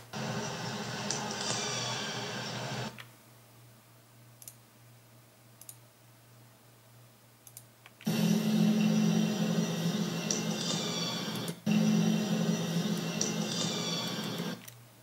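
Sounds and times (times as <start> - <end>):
low steady hum: 2.6 - 15.0
dense loud sound: 8.1 - 10.8.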